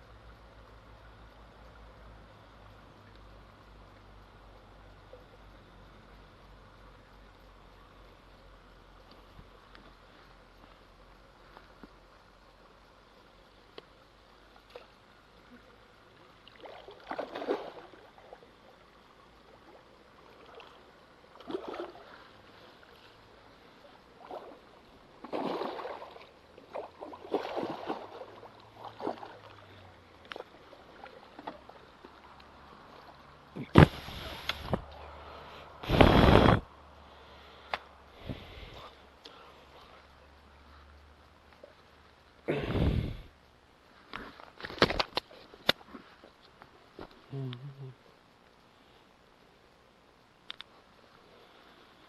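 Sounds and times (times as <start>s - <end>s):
water splashing and sloshing: 13.6s - 36.7s, 44.0s - 47.3s.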